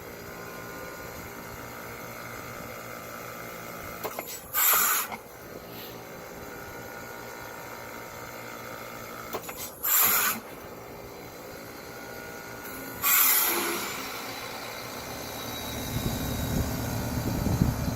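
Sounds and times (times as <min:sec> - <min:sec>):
heat pump humming: 0:00.0 - 0:17.9
bursts of hiss: 0:04.1 - 0:05.2, 0:09.3 - 0:10.4.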